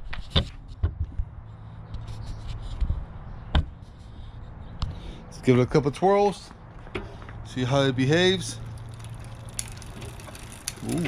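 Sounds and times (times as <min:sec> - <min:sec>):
bicycle knocks and taps: 0:03.5 - 0:03.8, 0:08.9 - 0:11.0.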